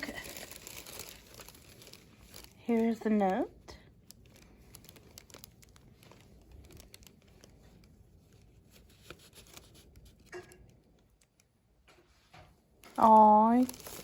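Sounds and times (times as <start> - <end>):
paper note rustling: 5.2 - 10.4.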